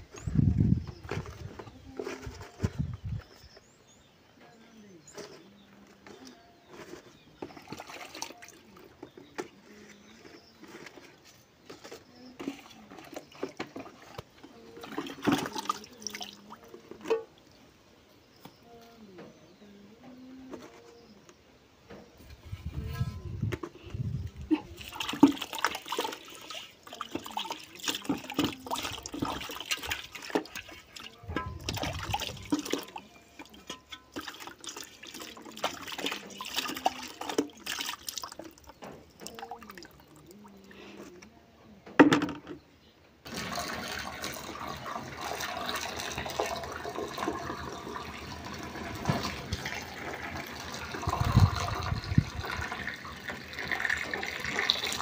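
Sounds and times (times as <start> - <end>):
water splashing and pouring: 7.4 - 8.8, 12.4 - 17.1, 24.5 - 40.4, 43.2 - 55.0
running water rushing: 24.5 - 40.4, 43.3 - 55.0.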